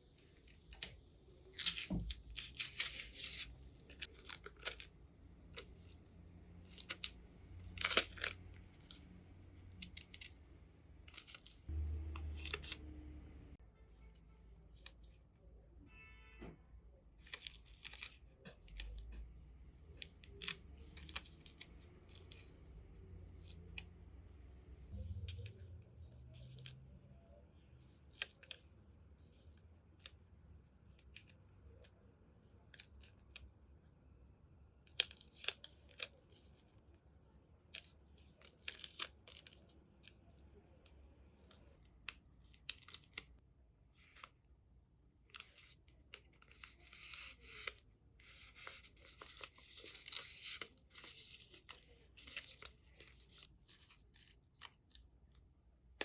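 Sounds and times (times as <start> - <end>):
paper rustling: 45.4 - 55.0
scissors snipping paper: 45.4 - 55.0.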